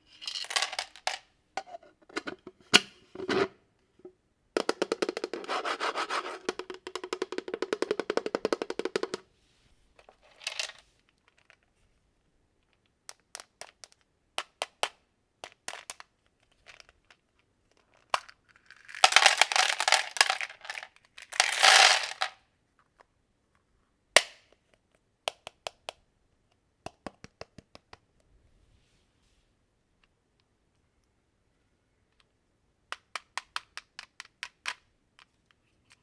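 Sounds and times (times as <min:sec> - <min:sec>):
small hard objects clicking: 0:17.8 - 0:22.3.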